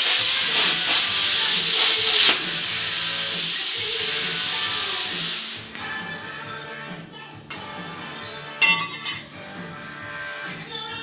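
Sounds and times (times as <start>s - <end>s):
plasma cutter hissing: 0.0s - 5.7s.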